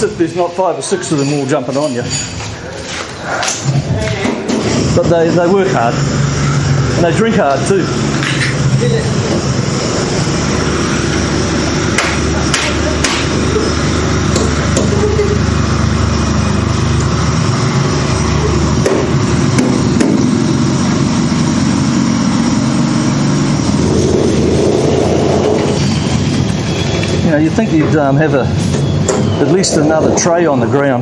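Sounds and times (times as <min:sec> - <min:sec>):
motor running steadily: 0:03.8 - 0:30.7
sharp knocks: 0:12.0 - 0:13.4, 0:14.3 - 0:15.1, 0:18.8 - 0:20.3.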